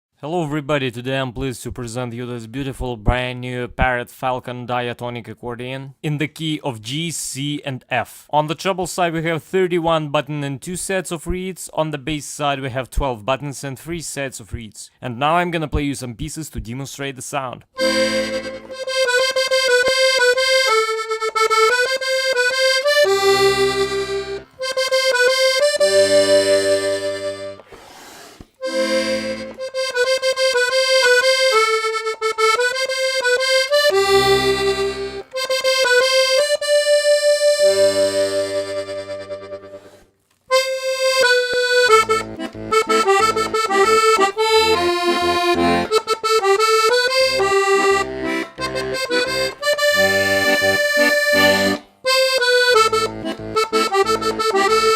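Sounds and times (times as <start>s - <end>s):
button accordion playing a tune: 17.8s - 54.9s.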